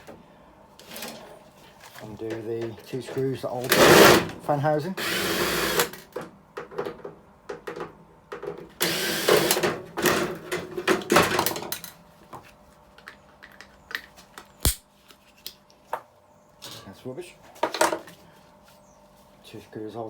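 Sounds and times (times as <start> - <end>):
power screwdriver running: 5.0 - 6.0, 8.8 - 9.6.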